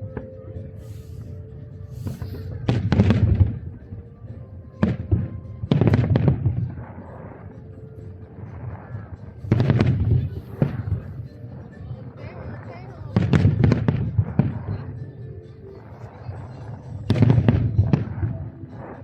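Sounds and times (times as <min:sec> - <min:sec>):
fireworks crackle: 0:00.8 - 0:03.8
fireworks booming: 0:01.9 - 0:03.8, 0:08.5 - 0:11.8.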